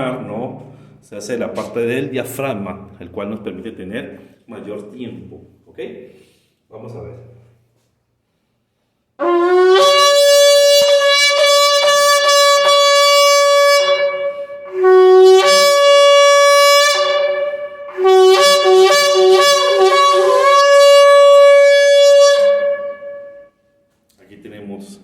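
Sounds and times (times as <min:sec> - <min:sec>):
shofar blasts: 0:09.2 - 0:23.7.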